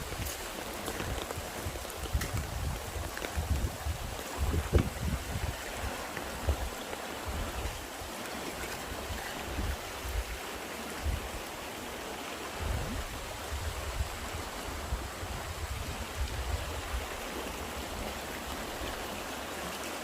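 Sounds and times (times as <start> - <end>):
wind buffeting microphone: 0.0 - 8.1, 12.6 - 19.1
water rushing over rocks: 0.0 - 20.0.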